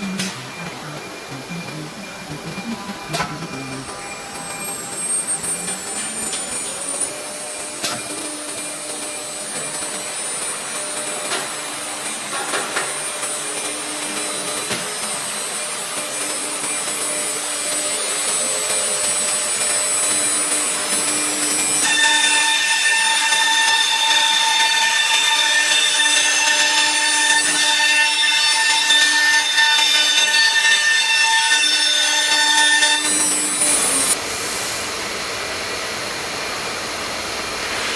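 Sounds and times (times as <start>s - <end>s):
low whine with overtones: 0.0s - 6.8s
router machine whining: 0.0s - 34.2s.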